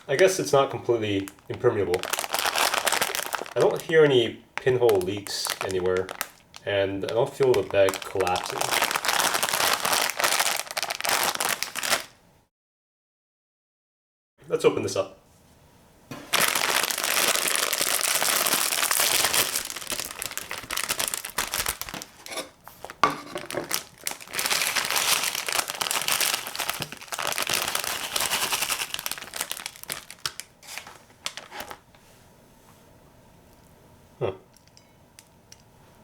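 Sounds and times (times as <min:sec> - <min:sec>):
chip bag crinkling: 0:00.0 - 0:12.2, 0:16.1 - 0:31.9.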